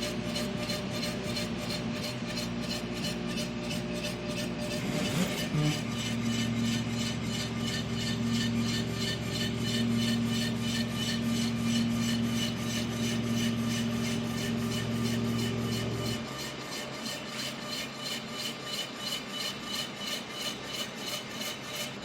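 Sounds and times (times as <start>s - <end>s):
electric motor hum: 0.0s - 16.4s.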